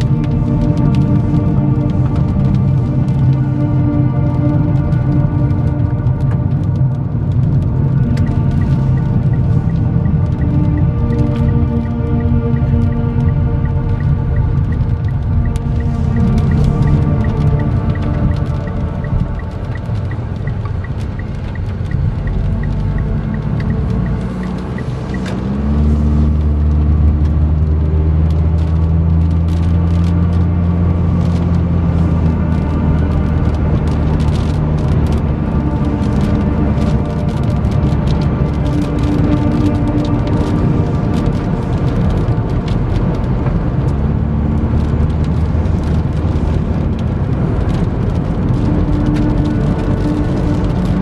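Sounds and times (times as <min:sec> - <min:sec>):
light ticks: 0:00.0 - 0:27.4, 0:31.2 - 0:31.6, 0:32.5 - 0:44.0
car engine and road drone: 0:00.0 - 0:51.0
sharp ticks against a car: 0:08.2 - 0:25.9.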